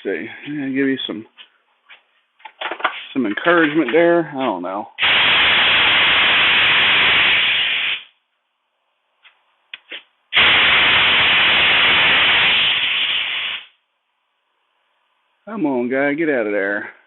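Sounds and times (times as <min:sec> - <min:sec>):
hissing air blasts: 0:05.0 - 0:08.1, 0:10.3 - 0:13.8.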